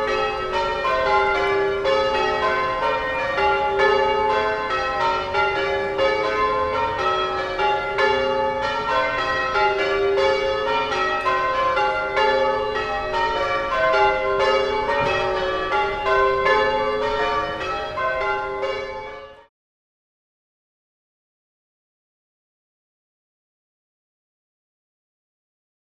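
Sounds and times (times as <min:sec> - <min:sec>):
church bells pealing: 0:00.0 - 0:19.5.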